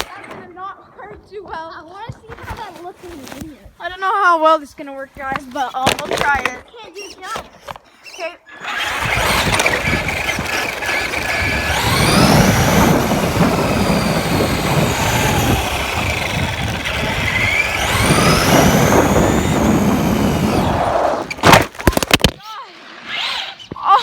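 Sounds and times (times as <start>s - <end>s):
rc car motor whine: 8.1s - 21.7s
tyres rumbling over ground: 8.6s - 22.2s.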